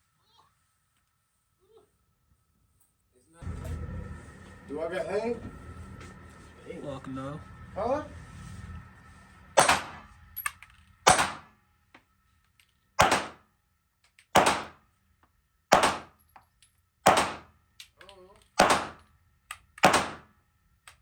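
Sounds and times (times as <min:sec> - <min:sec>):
gunshots: 0:09.6 - 0:10.1, 0:11.0 - 0:11.6, 0:13.0 - 0:13.4, 0:14.3 - 0:14.8, 0:15.7 - 0:16.2, 0:17.0 - 0:17.5, 0:18.6 - 0:19.0, 0:19.8 - 0:20.3.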